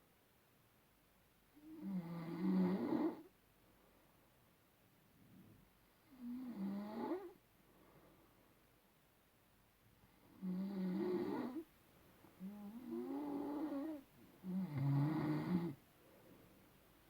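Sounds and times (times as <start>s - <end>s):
person snoring: 12.4s - 15.8s.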